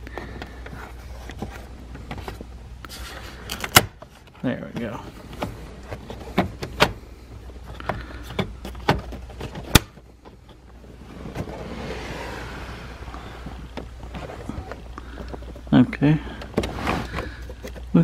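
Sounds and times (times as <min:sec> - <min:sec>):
rubbing scraping sound: 0:10.8 - 0:14.7.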